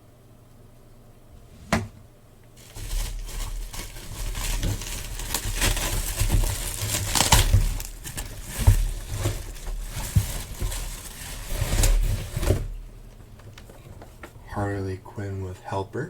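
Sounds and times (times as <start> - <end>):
cardboard and plastic packaging rustling: 2.6 - 15.0.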